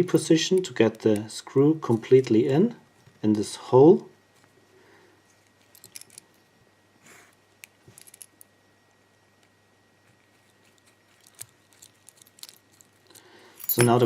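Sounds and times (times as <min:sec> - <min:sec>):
padlock parts clicking: 0:05.6 - 0:06.4, 0:07.6 - 0:08.5, 0:11.1 - 0:14.0.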